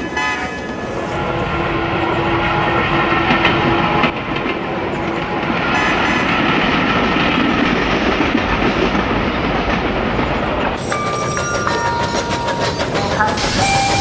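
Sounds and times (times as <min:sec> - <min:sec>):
train wheels rumbling on rails: 0:00.0 - 0:14.0
high tones switching pitch: 0:10.8 - 0:14.0.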